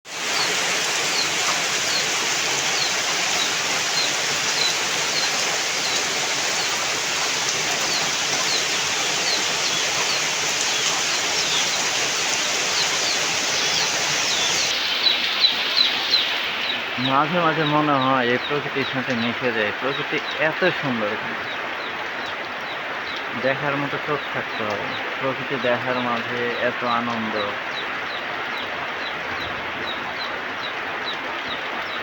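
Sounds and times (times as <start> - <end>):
heavy rain: 0.0 - 32.0.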